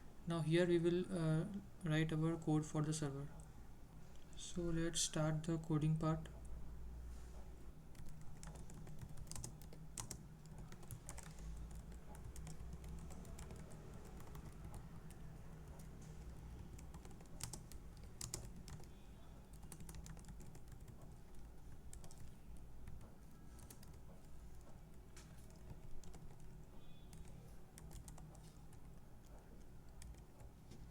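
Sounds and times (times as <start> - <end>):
faint low hum: 0.0 - 30.9
keyboard typing clicks: 7.9 - 18.9, 19.5 - 30.9.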